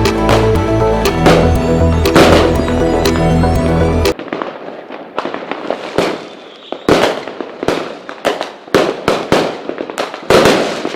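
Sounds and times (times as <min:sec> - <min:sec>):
fireworks bangs and crackle: 0:04.1 - 0:10.9.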